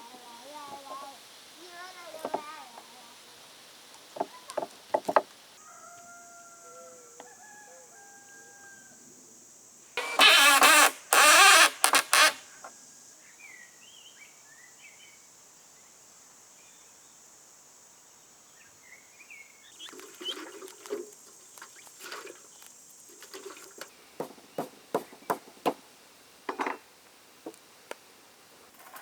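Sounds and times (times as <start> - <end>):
small birds chirping: 18.5 - 23.6.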